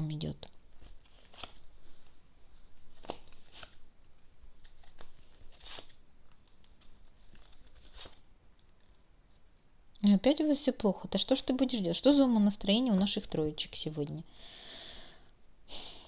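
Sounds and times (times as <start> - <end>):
cards rustling and tapping: 2.8 - 9.0.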